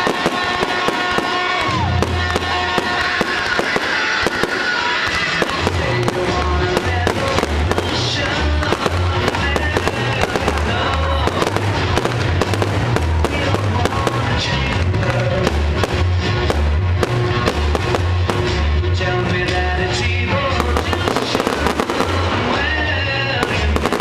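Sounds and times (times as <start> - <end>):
fireworks banging and crackling: 0.0 - 24.0
loud music with bass beat: 0.0 - 24.0.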